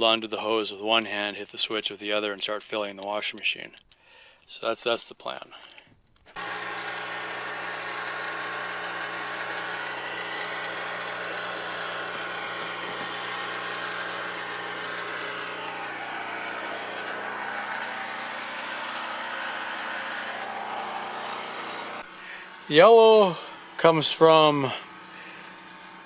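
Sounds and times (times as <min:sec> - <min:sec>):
generator engine running: 0:06.3 - 0:26.0.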